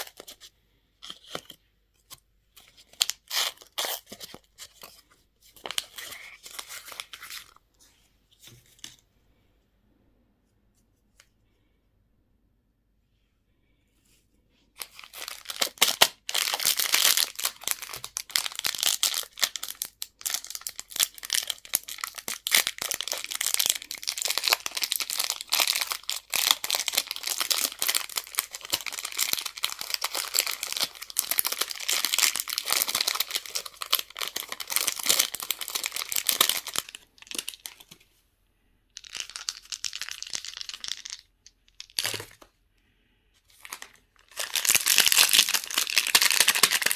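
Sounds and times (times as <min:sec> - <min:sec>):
candy wrappers crinkling: 0:00.0 - 0:01.6, 0:02.6 - 0:05.0, 0:05.6 - 0:07.6, 0:14.8 - 0:38.0, 0:39.0 - 0:42.5, 0:43.5 - 0:46.9.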